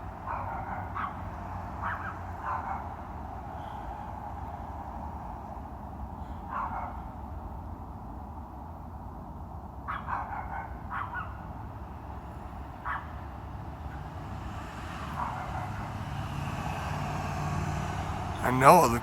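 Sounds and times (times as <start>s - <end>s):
dog barking: 0.3s - 1.2s, 1.8s - 3.0s, 6.5s - 7.1s, 9.9s - 11.4s
road vehicle hiss: 1.3s - 6.5s, 11.9s - 18.4s.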